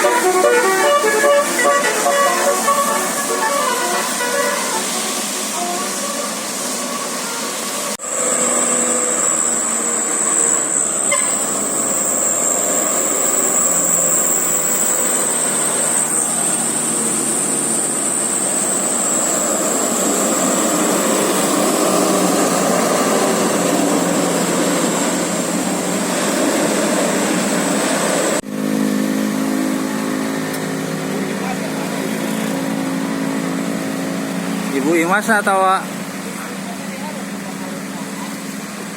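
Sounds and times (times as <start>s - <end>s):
engine and tyres rushing: 0.0s - 38.9s
high-pitched whine: 5.2s - 34.0s.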